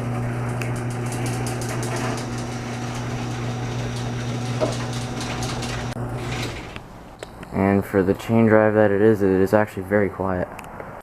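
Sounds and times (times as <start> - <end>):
garage door opener motor hum: 0.0 - 7.2.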